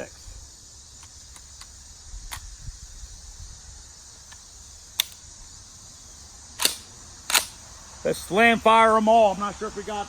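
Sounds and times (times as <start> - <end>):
crickets chirring: 0.0 - 10.0
shotgun metallic clicks: 4.3 - 5.2, 6.6 - 7.6.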